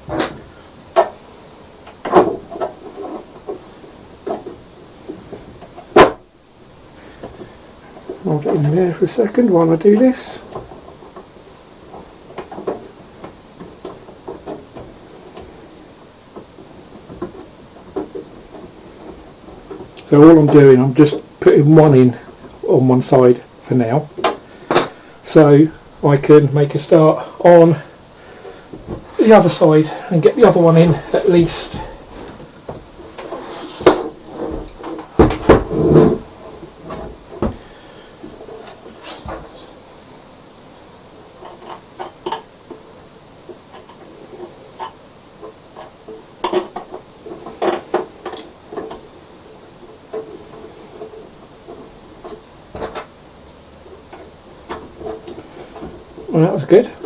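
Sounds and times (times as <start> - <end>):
metal frame knocks and clunks: 30.4 - 37.7
light clicks and knocks of parts: 41.3 - 57.0.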